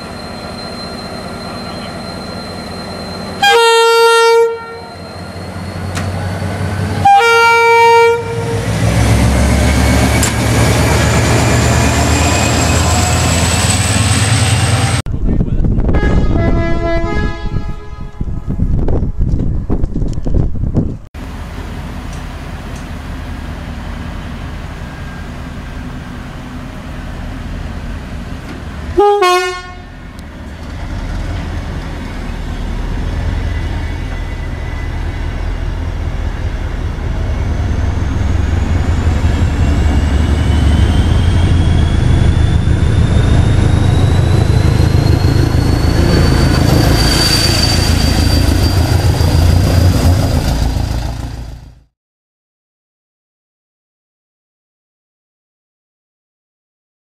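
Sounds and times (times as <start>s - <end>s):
rising train whine: 0.0s - 51.9s
train running with low rumble: 0.0s - 51.9s
train horn two-tone blast: 3.4s - 5.0s, 6.8s - 8.7s, 15.9s - 18.8s, 28.9s - 30.0s.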